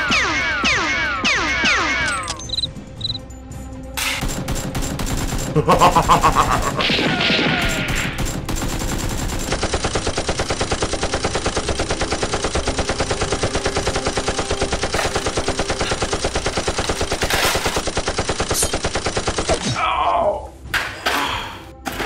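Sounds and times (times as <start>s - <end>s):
rapid automatic gunfire: 4.2s - 19.6s.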